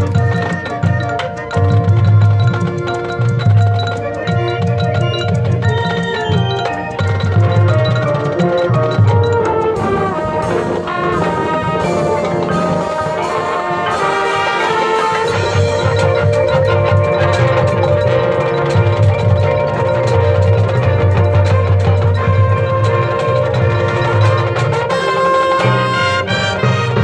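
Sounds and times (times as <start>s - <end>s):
drums: 0.0s - 27.0s
mallet percussion: 0.0s - 27.0s
brass sustaining chords: 7.4s - 27.0s.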